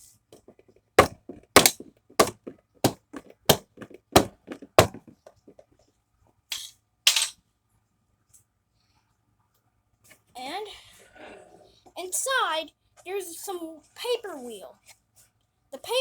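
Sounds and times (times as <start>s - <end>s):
plastic cracking: 0.4s - 5.6s.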